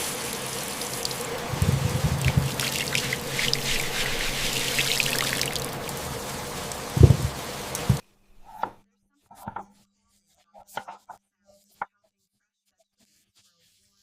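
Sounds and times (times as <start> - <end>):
water trickling and dripping: 0.0 - 8.0
steady hiss: 0.0 - 8.6
soft low thuds: 1.5 - 2.6, 5.8 - 8.0.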